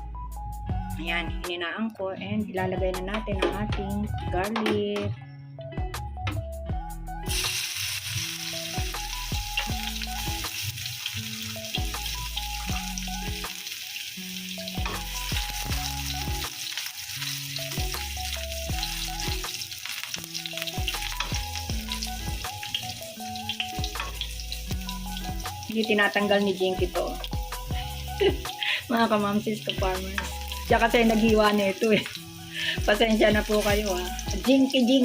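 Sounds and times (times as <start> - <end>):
background music: 0.0 - 35.0
garlic sizzling in oil: 7.3 - 35.0.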